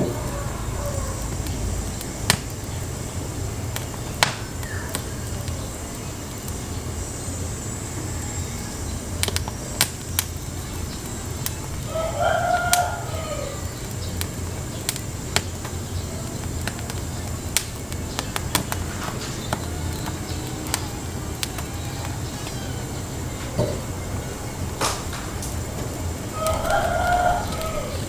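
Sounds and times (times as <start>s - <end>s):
chicken calling: 0.0s - 28.0s
steady low rumble: 0.0s - 28.0s
sharp clicks: 13.6s - 22.7s.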